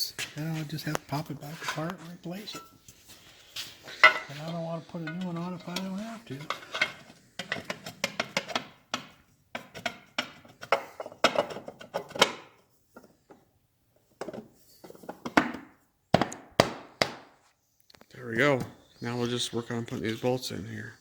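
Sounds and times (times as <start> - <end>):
metal parts clinking and scraping: 6.4 - 8.0.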